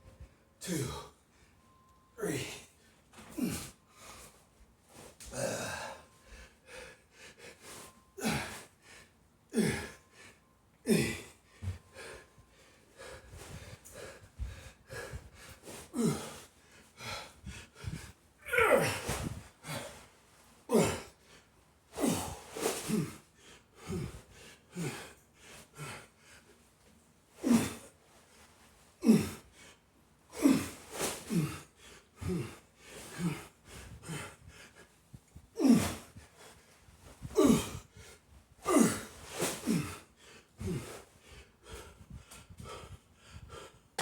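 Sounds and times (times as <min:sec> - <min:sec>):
man breathing hard and grunting: 0:05.4 - 0:06.1, 0:08.2 - 0:08.7, 0:09.5 - 0:10.0, 0:10.9 - 0:12.2, 0:15.9 - 0:16.4, 0:17.0 - 0:20.0, 0:20.7 - 0:21.1, 0:22.0 - 0:25.1, 0:29.0 - 0:29.4, 0:30.4 - 0:34.8, 0:35.6 - 0:36.2, 0:37.3 - 0:37.8, 0:38.7 - 0:43.7.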